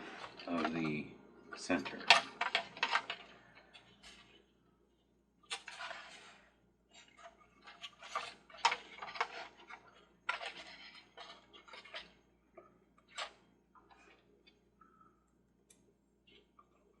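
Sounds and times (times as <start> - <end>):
small hard parts clicking: 1.8 - 4.3.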